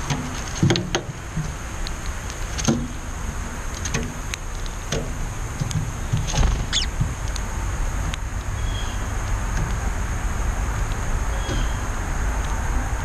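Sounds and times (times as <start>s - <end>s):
bird chirp: 6.0s - 7.0s, 8.5s - 9.1s, 11.3s - 11.9s.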